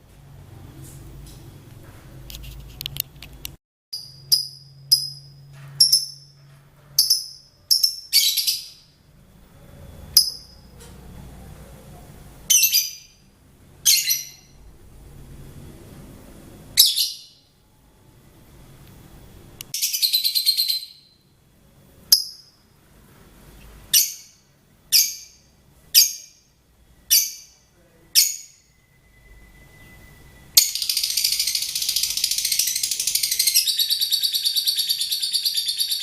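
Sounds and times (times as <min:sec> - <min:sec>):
bird chirping sharply: 0:07.0 - 0:09.0, 0:12.5 - 0:14.7, 0:16.8 - 0:17.5, 0:19.7 - 0:21.3, 0:28.2 - 0:36.0.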